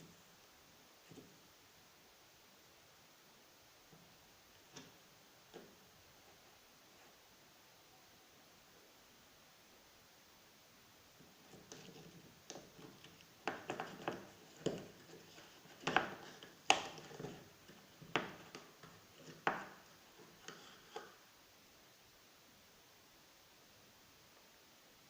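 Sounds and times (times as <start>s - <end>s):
rubbing: 11.2s - 21.1s
small knocks and clicks: 11.2s - 21.2s.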